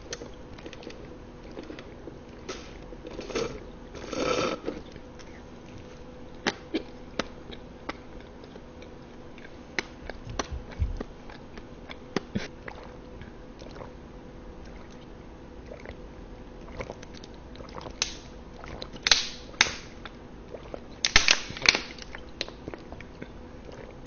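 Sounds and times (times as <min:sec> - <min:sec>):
chewing: 0:00.0 - 0:02.5, 0:04.2 - 0:14.0, 0:16.6 - 0:19.2, 0:20.0 - 0:21.0, 0:21.6 - 0:24.0
loud bites or slurps: 0:02.6 - 0:04.8.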